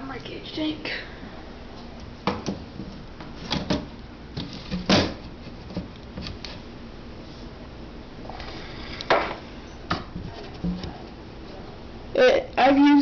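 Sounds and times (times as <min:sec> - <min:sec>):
objects knocking and clunking: 0:02.2 - 0:06.4, 0:09.1 - 0:11.2.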